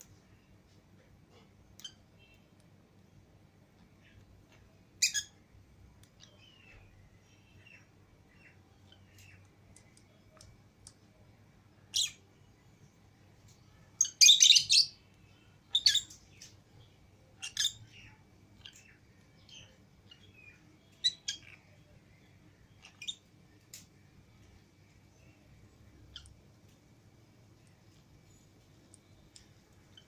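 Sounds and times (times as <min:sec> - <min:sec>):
lovebirds chirping: 0:00.1 - 0:30.0.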